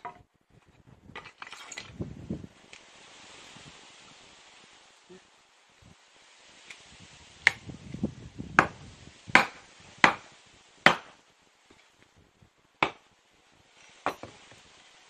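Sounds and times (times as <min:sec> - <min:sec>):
wood being chopped: 0:07.4 - 0:07.6, 0:08.6 - 0:11.2, 0:12.8 - 0:13.1, 0:14.0 - 0:14.4.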